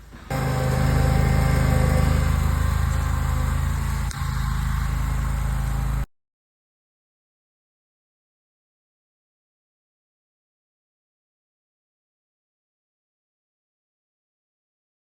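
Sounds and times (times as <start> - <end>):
engine running steadily: 0.0 - 6.1.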